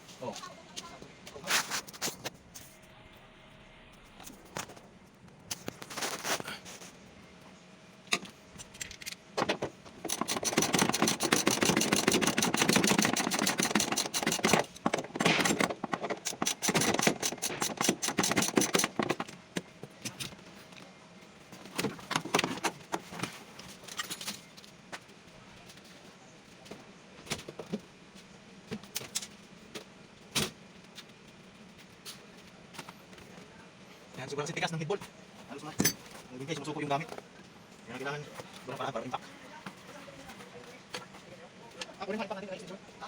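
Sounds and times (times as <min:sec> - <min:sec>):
ratchet wrench clicking: 0:10.1 - 0:14.8, 0:16.2 - 0:19.0.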